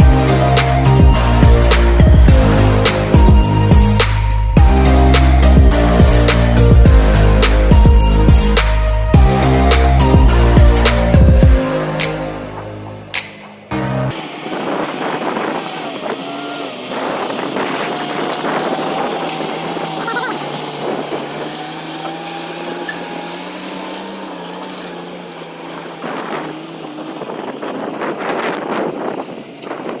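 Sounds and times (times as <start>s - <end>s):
engine running steadily: 0.0s - 12.6s, 14.1s - 30.0s
wind noise on microphone: 14.1s - 21.6s, 25.8s - 30.0s.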